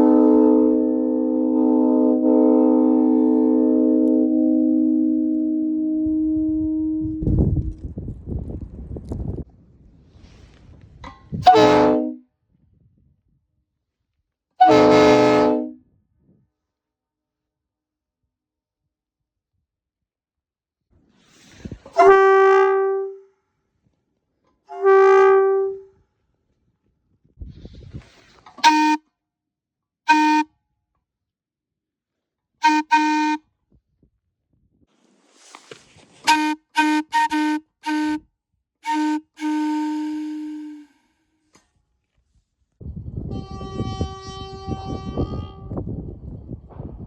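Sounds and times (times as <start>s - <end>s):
locomotive air horn blasts: 0.0s - 7.6s, 11.4s - 12.2s, 14.6s - 15.8s, 21.9s - 23.3s, 24.7s - 25.9s, 28.5s - 29.0s, 30.1s - 30.5s, 32.6s - 33.4s, 36.2s - 41.6s, 43.2s - 45.9s
lower-pitched air horn toots: 0.0s - 7.8s, 11.3s - 12.2s, 14.6s - 15.8s, 21.6s - 23.2s, 28.5s - 29.0s, 30.1s - 30.5s, 32.6s - 33.4s, 36.2s - 38.2s, 38.8s - 41.6s, 43.2s - 46.0s.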